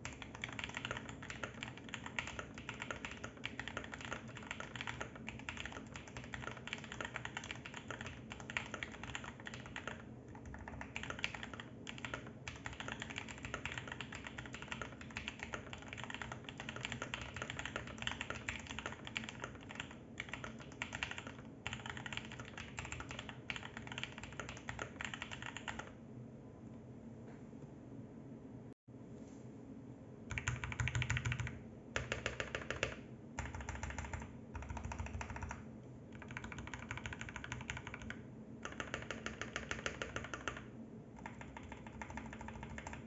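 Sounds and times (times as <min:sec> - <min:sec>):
mechanical keyboard typing: 0:00.0 - 0:25.9, 0:30.3 - 0:43.0.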